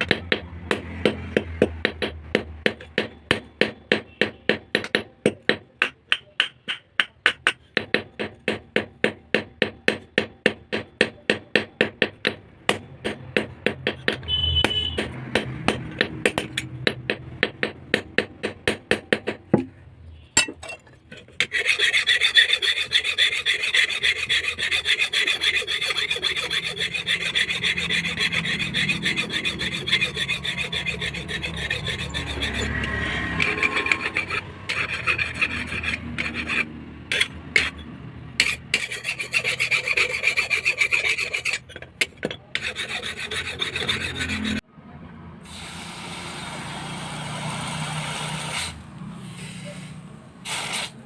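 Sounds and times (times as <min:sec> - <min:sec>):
steel being filed: 0:21.1 - 0:44.6, 0:45.5 - 0:50.0.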